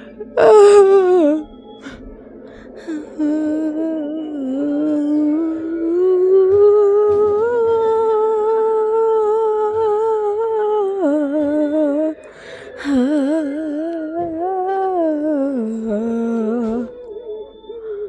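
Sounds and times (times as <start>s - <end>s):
person humming held notes: 0.0s - 18.0s
breath: 12.3s - 13.1s.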